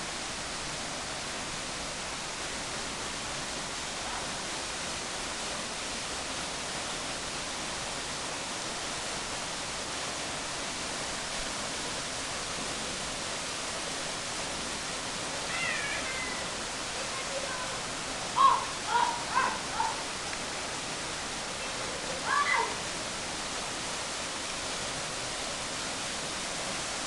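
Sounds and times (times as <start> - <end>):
waterfall roaring: 0.0 - 27.0.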